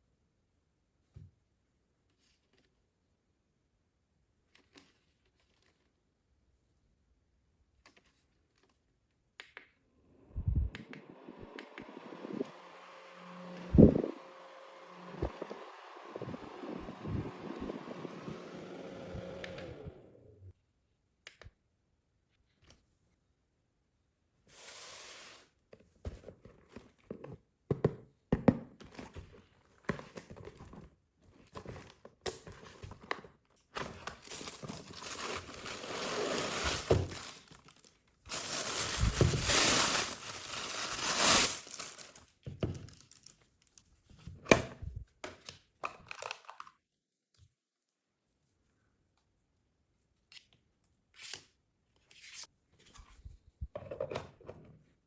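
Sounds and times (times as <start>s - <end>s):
small fan running: 10.5s - 20.5s
material crinkling and tearing: 33.8s - 43.9s.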